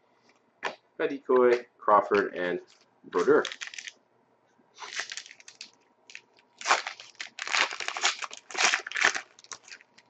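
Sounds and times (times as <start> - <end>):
card pack wrapper crinkling: 3.2 - 3.9, 4.8 - 10.0.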